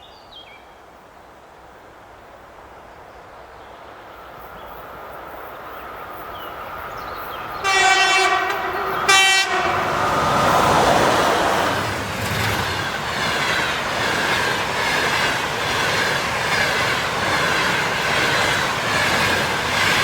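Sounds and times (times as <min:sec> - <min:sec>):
train running noise: 0:04.0 - 0:20.0
locomotive horn blasts: 0:07.6 - 0:11.4.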